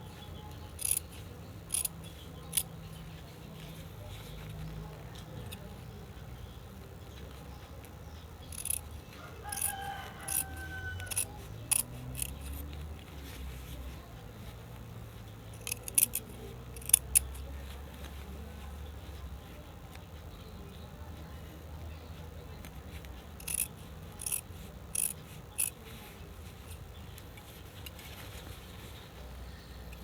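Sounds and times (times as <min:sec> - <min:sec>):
scissors snipping cloth: 0:00.6 - 0:02.7, 0:08.5 - 0:13.9, 0:15.6 - 0:18.1, 0:22.6 - 0:25.8.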